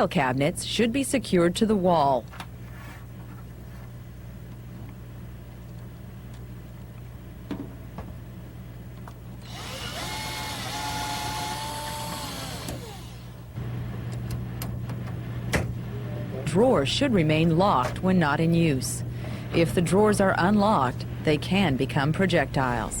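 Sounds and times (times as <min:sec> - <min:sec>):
steady low hum: 0:00.0 - 0:23.0
power drill whining: 0:09.4 - 0:13.4.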